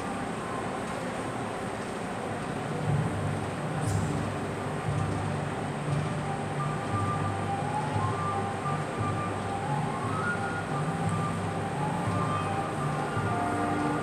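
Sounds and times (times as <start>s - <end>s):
steady background noise: 0.0s - 14.0s
orchestral music on radio: 7.0s - 14.0s.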